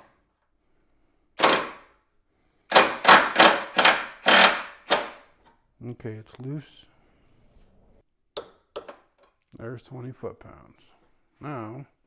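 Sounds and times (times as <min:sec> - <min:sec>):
impact wrench hammering: 0:01.4 - 0:01.9, 0:02.7 - 0:05.2.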